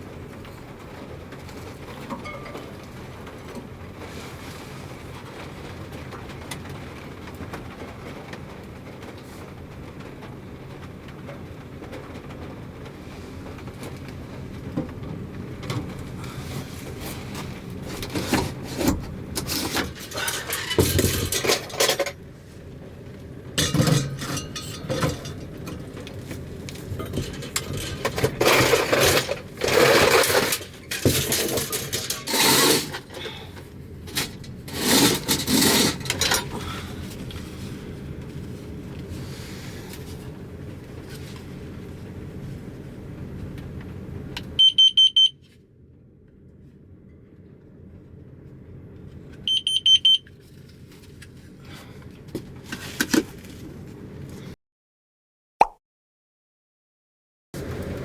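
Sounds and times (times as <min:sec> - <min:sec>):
objects clinking and scraping: 0:02.1 - 0:02.9, 0:17.9 - 0:22.2, 0:23.6 - 0:33.4, 0:34.1 - 0:36.7.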